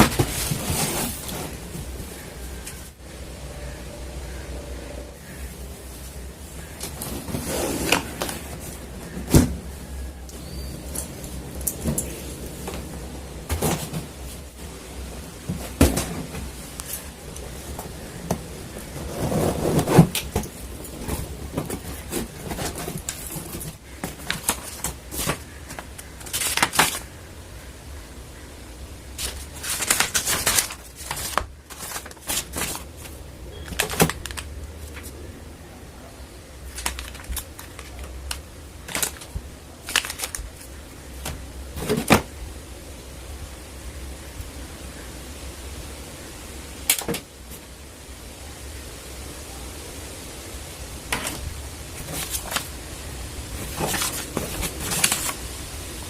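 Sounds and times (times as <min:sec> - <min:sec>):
packaging rustling and scraping: 0:00.0 - 0:03.0, 0:05.2 - 0:27.1, 0:29.1 - 0:35.2, 0:36.6 - 0:42.4, 0:51.0 - 0:55.5
packaging clicks and knocks: 0:17.7 - 0:27.1, 0:29.2 - 0:35.1, 0:36.7 - 0:42.3, 0:51.1 - 0:51.4, 0:53.6 - 0:55.4.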